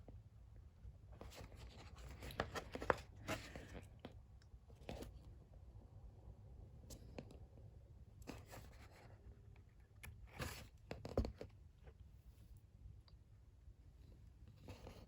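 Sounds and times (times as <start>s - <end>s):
glossy pages rustling: 1.2s - 4.0s.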